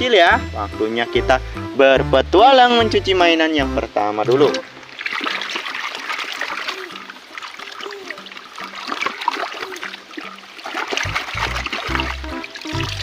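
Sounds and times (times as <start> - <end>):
stream water splashing: 4.0 - 13.0.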